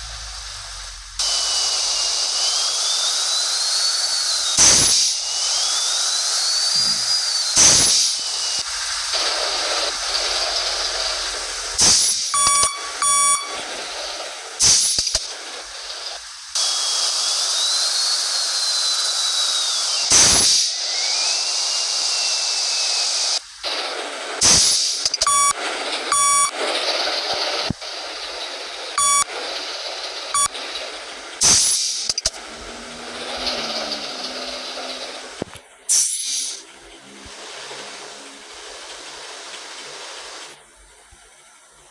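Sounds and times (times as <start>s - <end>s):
steady hiss: 0.0s - 13.0s, 27.0s - 41.9s
bursts of hissing air: 0.0s - 17.9s, 20.0s - 20.9s, 21.6s - 25.2s, 31.4s - 36.7s
bus horn beeping: 12.4s - 13.6s.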